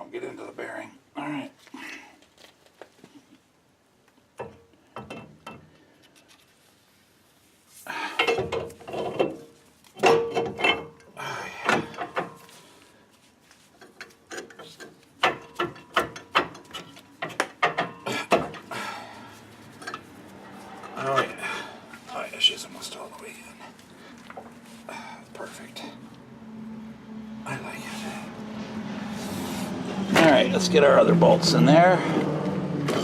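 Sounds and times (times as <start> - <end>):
metal axle clicking and scraping: 8.1 - 12.6, 13.5 - 24.6.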